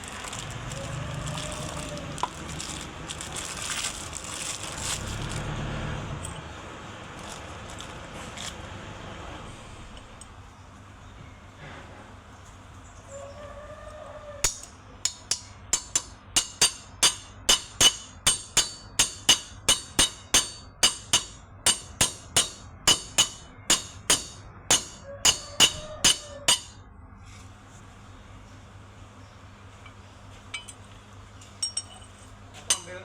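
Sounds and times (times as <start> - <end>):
hammer striking metal: 14.4 - 26.8, 32.7 - 33.0.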